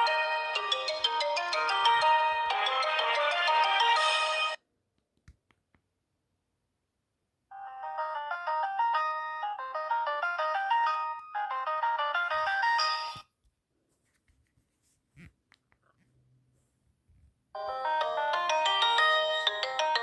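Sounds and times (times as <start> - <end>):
synthesised ringtone melody: 0.0 - 4.6, 7.5 - 13.2, 17.6 - 20.0.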